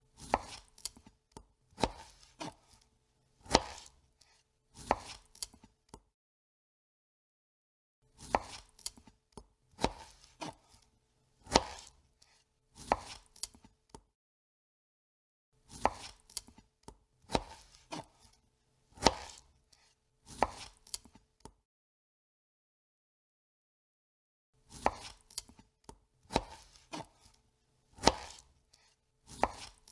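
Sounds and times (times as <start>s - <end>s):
knife chopping on cutting board: 0.2s - 1.0s, 1.8s - 2.8s, 3.4s - 4.0s, 4.8s - 5.6s, 8.2s - 9.1s, 9.8s - 10.8s, 11.4s - 12.0s, 12.8s - 13.6s, 15.7s - 16.6s, 17.3s - 18.3s, 18.9s - 19.5s, 20.3s - 21.2s, 24.7s - 25.6s, 26.3s - 27.3s, 27.9s - 29.9s.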